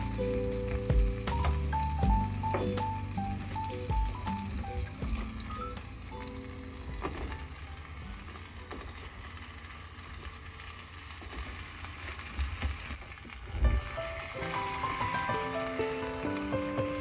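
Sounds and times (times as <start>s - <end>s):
soft background music: 0.0s - 9.1s, 13.7s - 17.0s.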